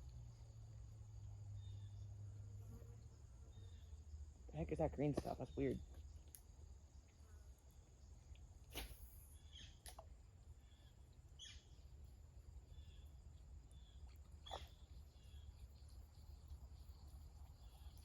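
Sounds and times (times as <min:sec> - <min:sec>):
faint bird chirps: 0:01.5 - 0:04.2, 0:08.7 - 0:09.9, 0:10.5 - 0:18.0
brief swishing noises: 0:08.7 - 0:09.2.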